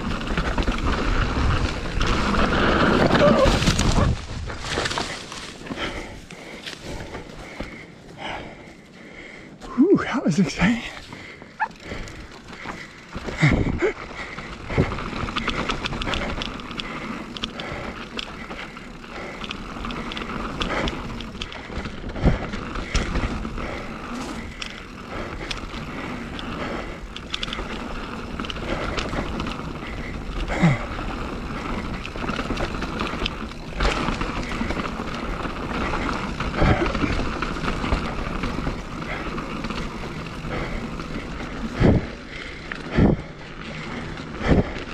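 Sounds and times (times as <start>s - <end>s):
bike rattling over bumps: 0.0s - 44.9s
bike tyres rolling on dirt: 0.0s - 44.9s
steady whirr: 10.4s - 44.9s.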